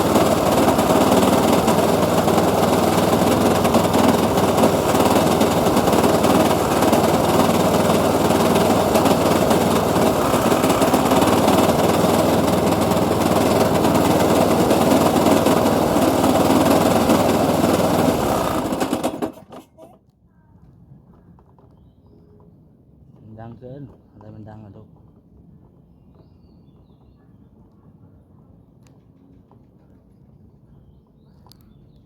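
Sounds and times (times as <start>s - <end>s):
lawn mower engine running: 0.0s - 19.9s.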